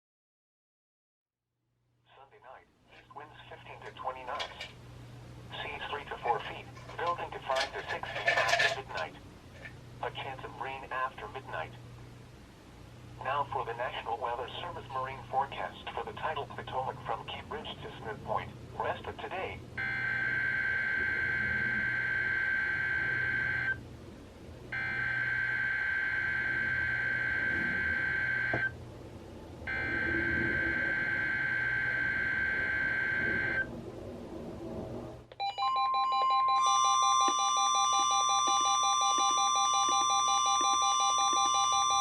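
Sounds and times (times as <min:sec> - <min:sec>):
radio alert alarm tones and beeping: 0:29.7 - 0:33.7, 0:35.4 - 0:42.0.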